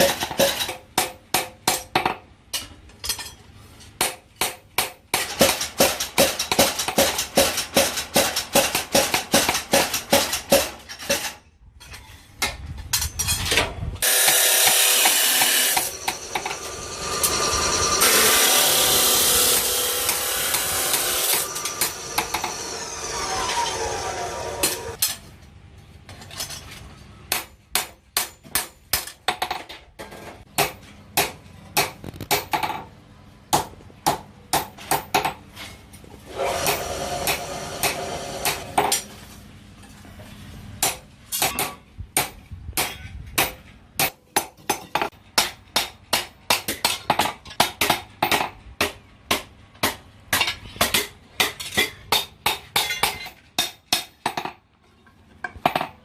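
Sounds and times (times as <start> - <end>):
hammer striking steel on anvil: 0.0 - 3.4, 14.0 - 18.5, 27.3 - 29.6, 40.8 - 54.6
power tool running: 14.0 - 25.0, 36.3 - 38.8.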